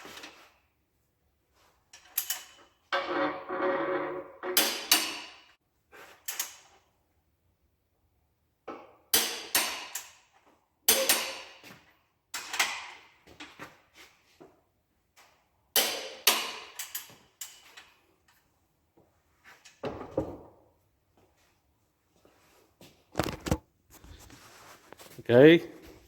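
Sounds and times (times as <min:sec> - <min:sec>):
hand tools clanking on metal: 0:10.9 - 0:11.7.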